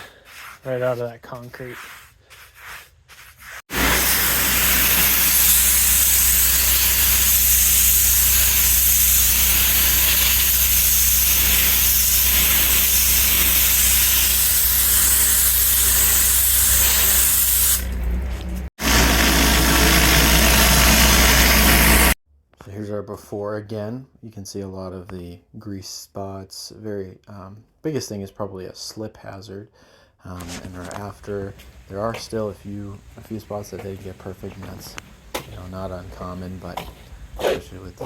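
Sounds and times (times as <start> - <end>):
pressure washer jet spraying: 3.7 - 18.2.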